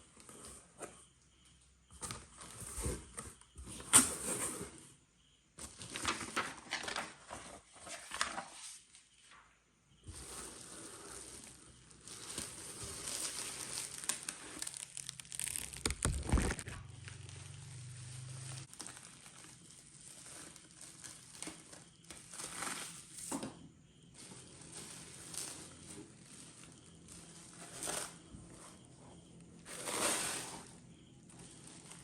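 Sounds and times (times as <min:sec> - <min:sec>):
packaging crinkling and rustling: 0:10.2 - 0:23.1.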